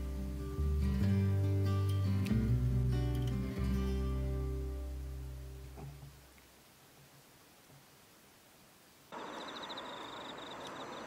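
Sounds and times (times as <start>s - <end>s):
acoustic guitar music: 0.0s - 6.3s.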